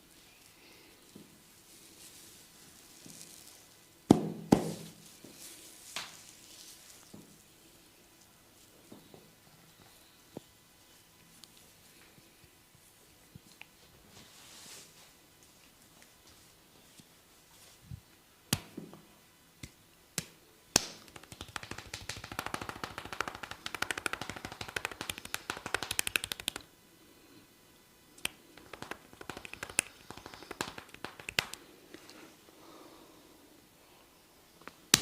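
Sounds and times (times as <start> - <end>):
sharp finger snaps: 18.5 - 18.7, 19.6 - 26.7, 28.2 - 31.6
hands tapping on head: 19.6 - 26.7, 28.2 - 31.6.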